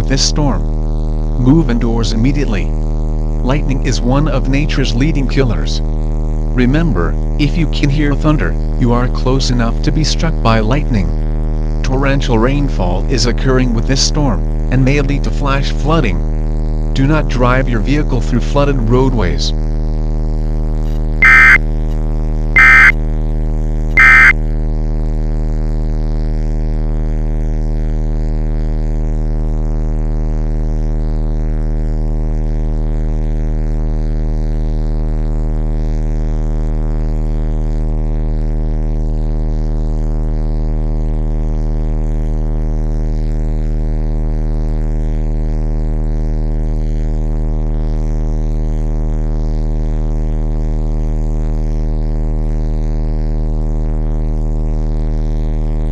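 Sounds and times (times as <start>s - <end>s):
electrical buzzing hum: 0.0s - 17.7s, 20.4s - 21.9s, 22.6s - 23.0s, 23.9s - 24.3s
alert data tone bursts: 21.2s - 21.6s, 22.6s - 22.9s, 24.0s - 24.3s.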